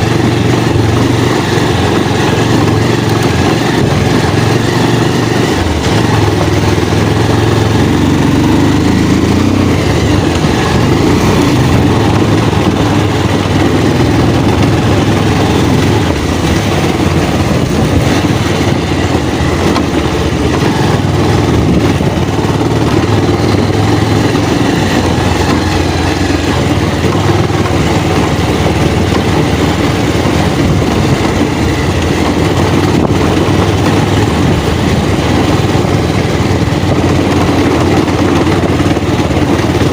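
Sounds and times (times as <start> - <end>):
loud rush of noise: 0.0 - 39.9
motorcycle engine rumble: 0.0 - 39.9.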